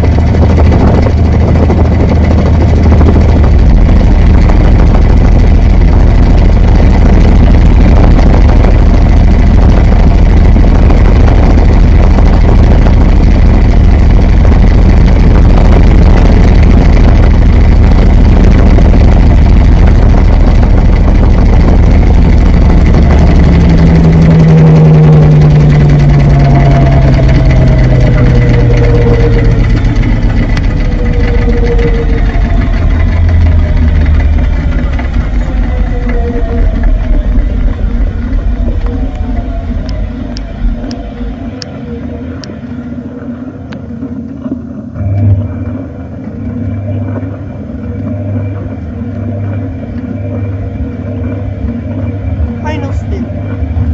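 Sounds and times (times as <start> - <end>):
washing machine drum rumble: 0.0 - 42.7
motor whine falling in pitch: 0.0 - 53.9.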